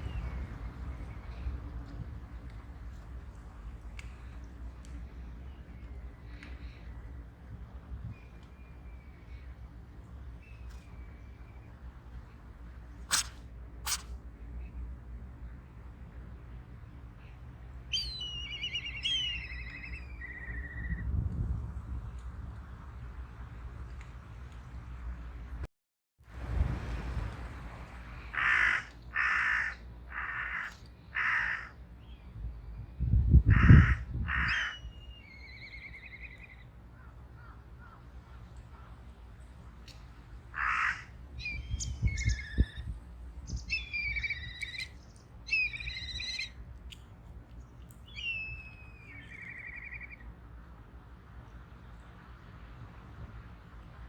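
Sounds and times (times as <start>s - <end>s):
gliding whistled bird calls: 17.9s - 21.1s, 34.5s - 36.6s, 41.4s - 42.9s, 43.5s - 46.6s, 48.0s - 50.2s
crow cawing: 28.3s - 31.8s, 33.5s - 34.8s, 40.6s - 41.1s.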